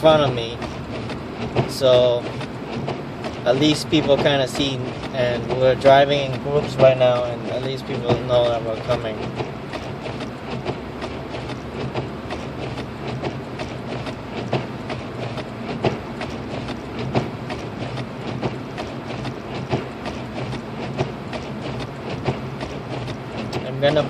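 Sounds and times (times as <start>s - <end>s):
hazard flasher ticking: 0.0s - 24.0s
road and engine rumble: 0.0s - 24.0s.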